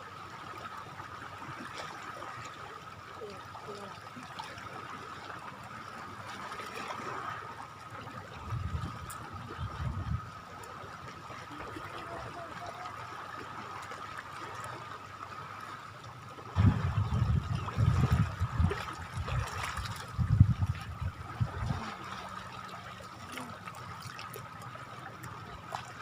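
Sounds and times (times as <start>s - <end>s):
shore water trickling and lapping: 0.0s - 26.0s
uneven low rumbling: 16.6s - 22.3s.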